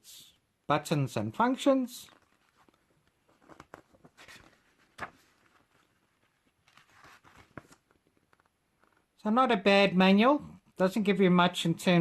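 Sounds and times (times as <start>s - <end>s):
paper rustling: 2.0s - 9.1s.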